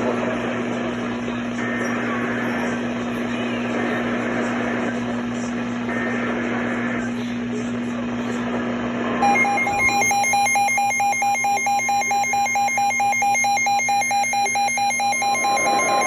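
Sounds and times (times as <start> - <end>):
radio hiss: 0.0 - 10.0
weather radio alert beeps: 9.2 - 16.0.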